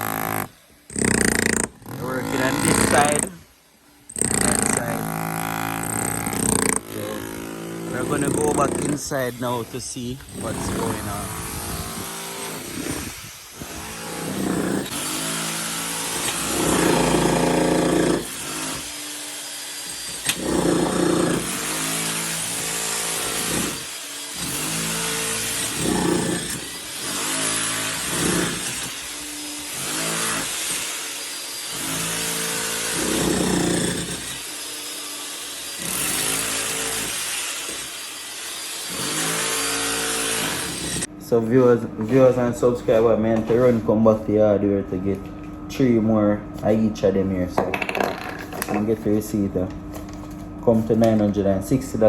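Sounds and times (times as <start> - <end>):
power tool drilling into wall: 0.0 - 3.4, 4.1 - 9.6, 10.2 - 41.1.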